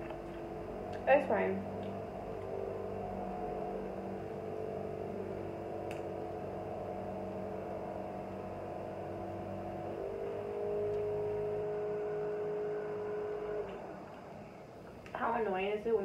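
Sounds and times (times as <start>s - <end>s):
lawnmower engine running: 0.0s - 14.9s.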